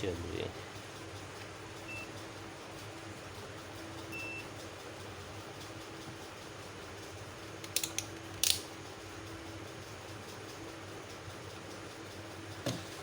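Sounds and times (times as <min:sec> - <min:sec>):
faint steady hum: 0:00.0 - 0:13.0
hand tool clicks: 0:07.6 - 0:08.7.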